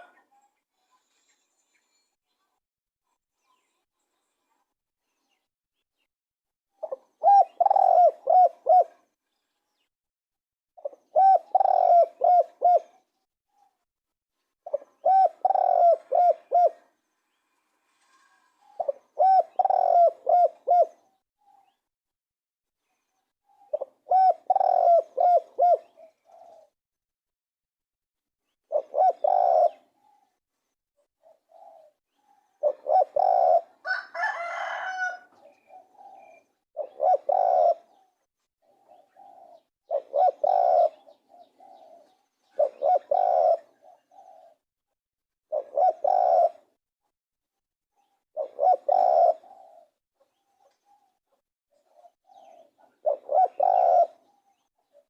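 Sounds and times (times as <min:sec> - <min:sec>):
dove cooing: 0:00.0 - 0:00.3, 0:06.8 - 0:09.1, 0:10.8 - 0:13.1, 0:14.7 - 0:17.0, 0:17.9 - 0:21.2, 0:23.5 - 0:26.8, 0:28.7 - 0:30.4, 0:31.2 - 0:44.6, 0:45.5 - 0:46.8, 0:48.3 - 0:55.0.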